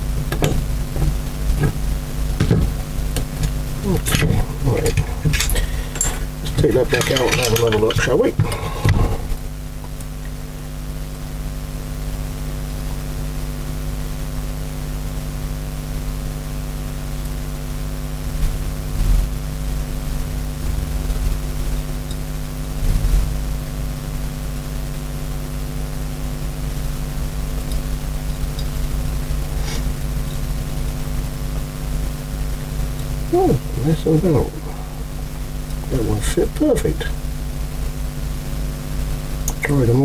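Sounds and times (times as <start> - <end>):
motor hum: 0.0 - 11.6.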